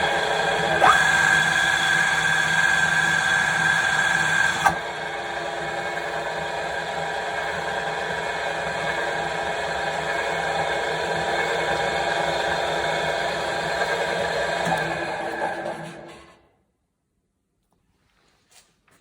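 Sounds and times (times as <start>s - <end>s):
pillar drill humming: 0.0s - 16.1s
drill click: 0.2s - 5.0s.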